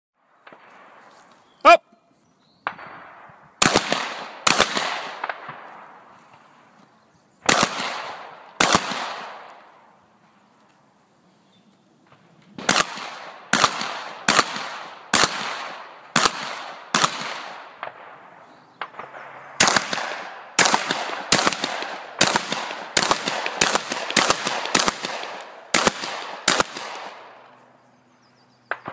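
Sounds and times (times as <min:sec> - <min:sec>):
shotgun shots with echo: 0:02.6 - 0:06.0, 0:07.4 - 0:09.7, 0:12.6 - 0:27.5.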